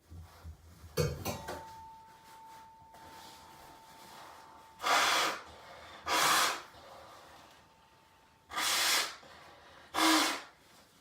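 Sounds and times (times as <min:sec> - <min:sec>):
man blowing air through nose: 0:04.8 - 0:06.7, 0:08.5 - 0:10.6.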